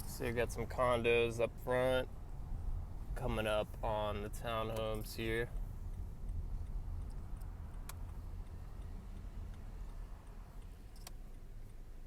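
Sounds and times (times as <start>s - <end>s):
car road and engine rumble: 0.0s - 12.0s
faint sharp clicks: 5.9s - 11.8s.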